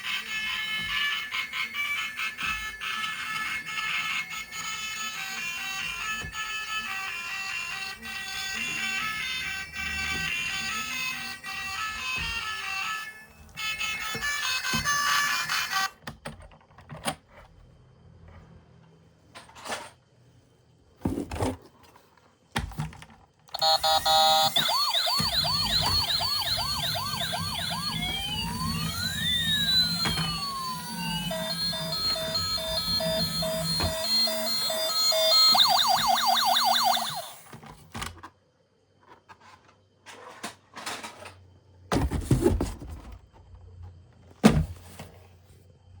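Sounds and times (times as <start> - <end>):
toy electronic siren: 0.0 - 15.9, 23.5 - 37.5.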